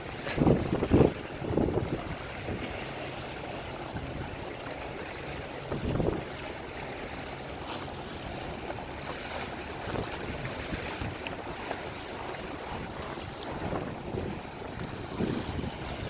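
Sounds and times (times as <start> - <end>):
wind buffeting microphone: 0.0 - 2.8, 5.6 - 6.5, 8.4 - 16.0
waves washing against boat: 0.0 - 16.0.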